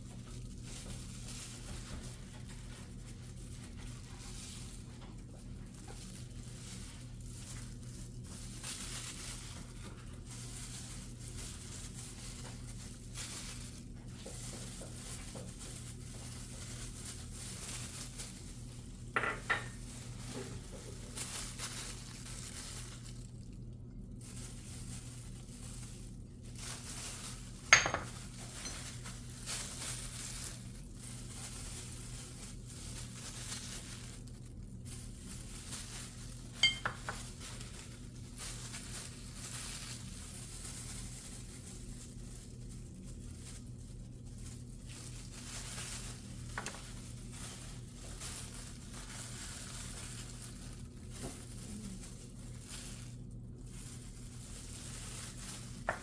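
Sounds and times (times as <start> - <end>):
steady low hum: 0.0 - 56.0
dishes and utensils clinking: 36.6 - 37.2.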